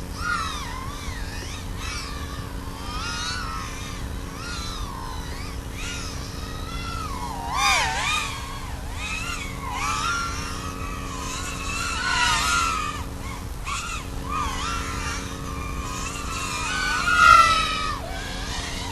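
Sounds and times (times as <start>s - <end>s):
quadcopter motors whining: 0.0s - 18.9s.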